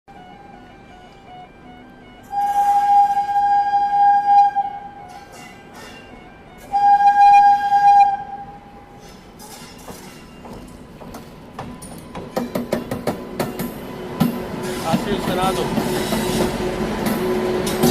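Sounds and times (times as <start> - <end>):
locomotive air horn blasts: 0.1 - 9.0.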